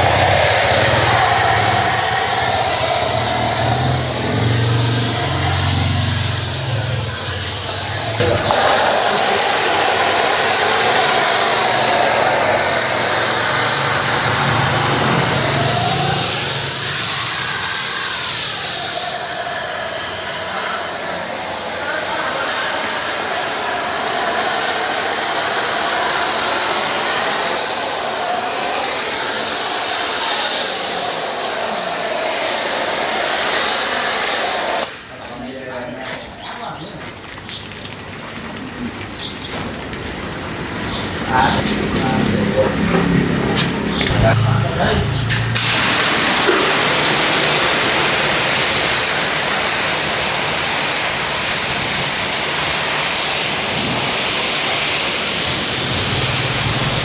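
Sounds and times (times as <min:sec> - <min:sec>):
pressure washer spraying water: 0:00.0 - 0:35.2, 0:39.7 - 0:57.0.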